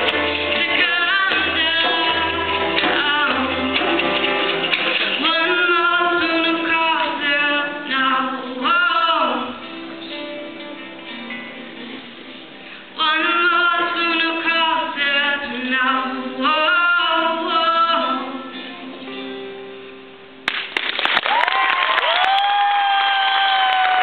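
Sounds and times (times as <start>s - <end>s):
guitar chords: 0.0s - 20.8s
audience applause and cheering: 20.5s - 24.0s.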